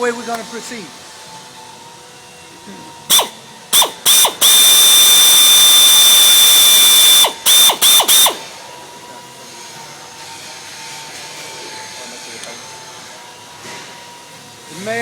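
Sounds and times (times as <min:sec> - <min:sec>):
power drill whining: 0:03.1 - 0:08.8.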